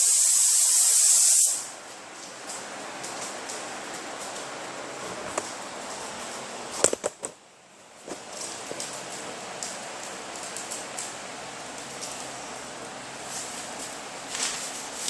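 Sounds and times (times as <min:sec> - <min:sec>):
spray gun hissing: 0:00.0 - 0:01.7.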